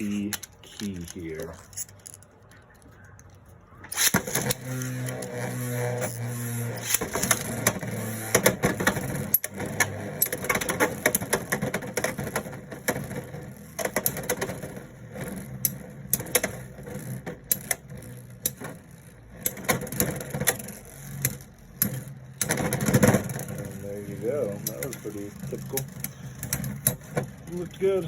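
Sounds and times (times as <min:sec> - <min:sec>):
spinning tops clicking and knocking: 0:03.9 - 0:27.8
spinning tops humming: 0:17.9 - 0:28.0.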